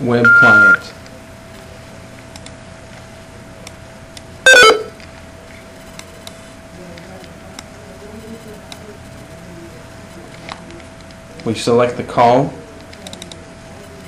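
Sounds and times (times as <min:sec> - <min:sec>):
electronic telephone tone: 0:00.2 - 0:00.9, 0:04.5 - 0:05.0.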